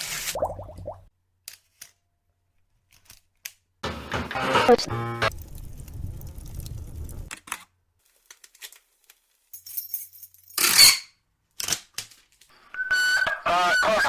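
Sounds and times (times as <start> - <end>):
low rumble: 5.3 - 7.3.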